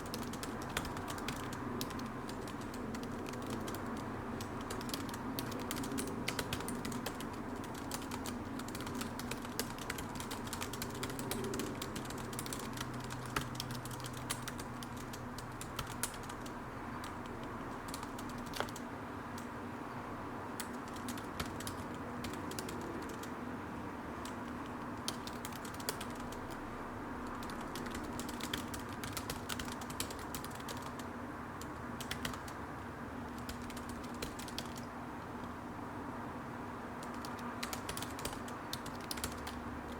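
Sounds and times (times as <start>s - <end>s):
keyboard key clicks: 0.0s - 18.8s, 20.6s - 23.3s, 24.2s - 26.6s, 27.3s - 32.5s, 37.0s - 39.6s
steady background hum: 0.0s - 39.9s.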